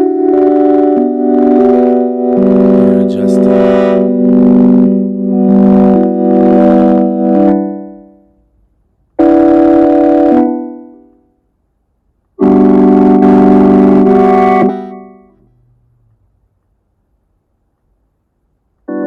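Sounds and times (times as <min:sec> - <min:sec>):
organ-like synthesizer chords: 0:02.5 - 0:04.2.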